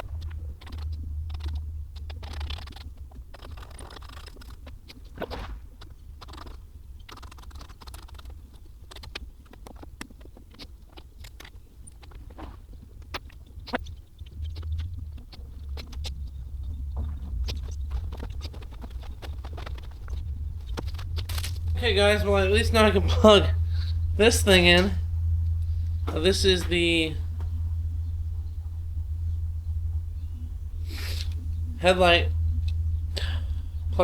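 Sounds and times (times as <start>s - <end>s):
low hum: 0.0s - 5.1s, 13.0s - 34.0s.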